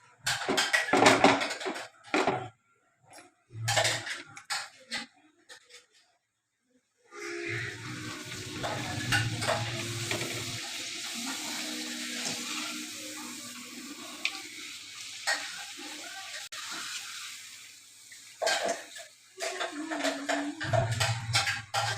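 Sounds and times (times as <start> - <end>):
hot oil sizzling and crackling: 7.3 - 21.9.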